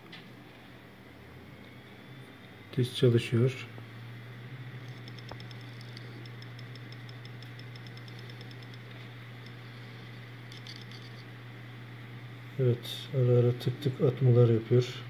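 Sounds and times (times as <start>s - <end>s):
hard drive spinning hum: 0.0s - 15.0s
hard drive ticking: 4.1s - 11.3s.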